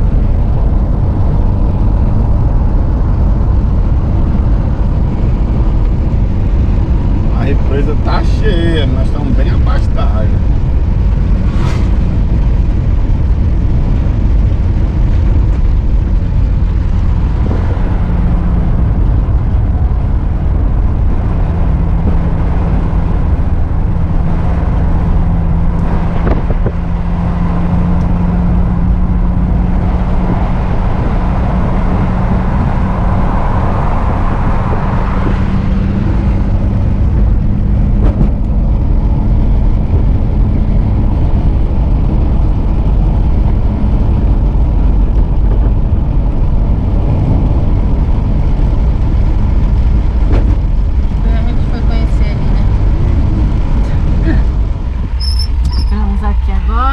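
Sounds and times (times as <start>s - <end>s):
vehicle engine and road rumble: 0.0s - 56.9s
rising engine tone: 9.4s - 13.2s.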